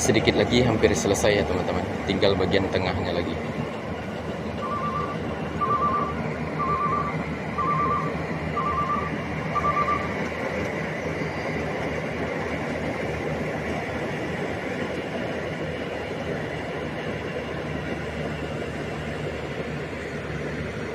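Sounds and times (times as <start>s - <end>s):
combine harvester engine and threshing: 0.0s - 20.9s
electronic warning beeper: 4.6s - 10.2s.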